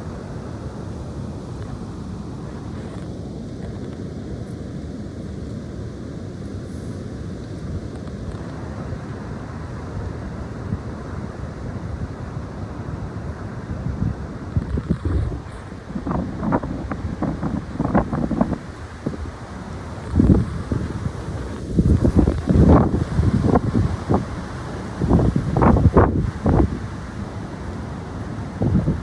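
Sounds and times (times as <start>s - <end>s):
high wind blowing: 0.0s - 29.0s.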